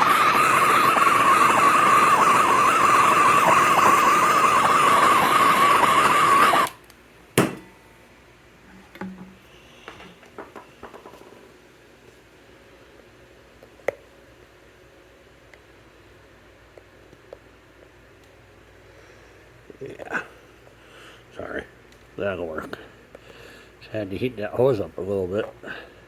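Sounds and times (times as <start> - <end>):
heat gun whirring: 0.0 - 6.8, 7.4 - 7.7.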